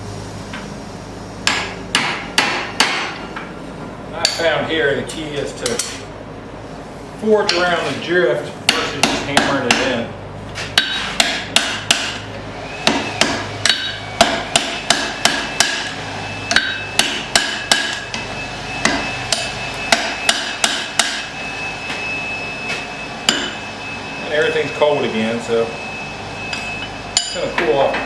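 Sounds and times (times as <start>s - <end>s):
hammer striking steel on anvil: 1.4s - 3.2s, 4.2s - 4.5s, 8.7s - 10.0s, 10.8s - 21.3s, 22.7s - 23.7s, 26.5s - 28.0s.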